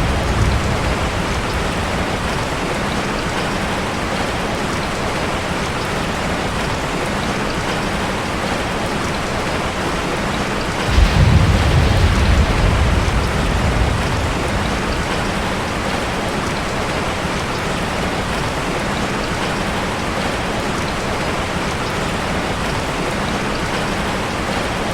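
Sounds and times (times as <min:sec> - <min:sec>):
low rumble of thunder: 0:00.0 - 0:04.2, 0:10.8 - 0:17.5
heavy rain pouring: 0:00.0 - 0:24.9.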